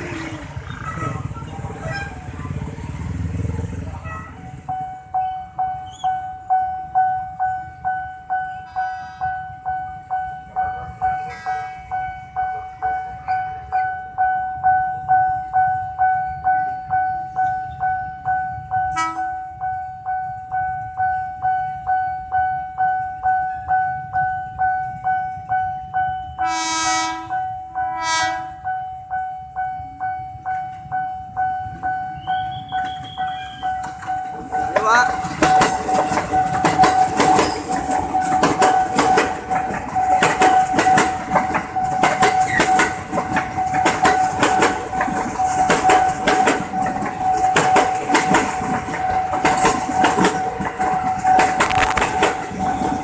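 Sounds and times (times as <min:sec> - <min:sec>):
train horn blasts: 0:08.5 - 0:09.5, 0:18.9 - 0:19.4, 0:26.3 - 0:28.7.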